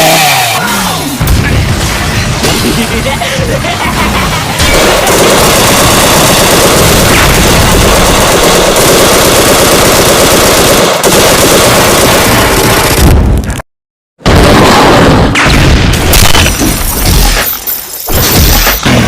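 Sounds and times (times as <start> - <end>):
rapid-fire battle rattle: 0.0 - 13.6, 14.2 - 19.0.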